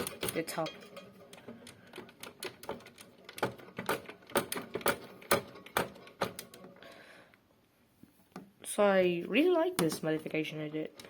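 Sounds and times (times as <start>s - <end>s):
toy washing machine clicking: 0.0s - 6.8s.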